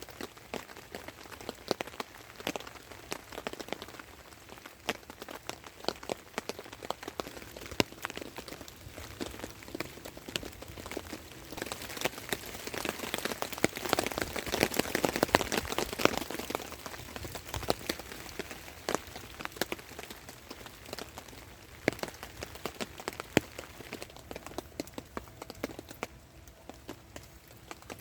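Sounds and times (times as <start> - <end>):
raindrops ticking: 0.0 - 28.0
steady rain hiss: 0.0 - 28.0.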